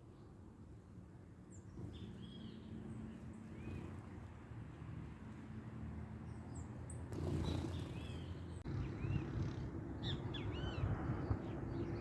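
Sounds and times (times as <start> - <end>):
birds chirping: 6.3 - 12.0.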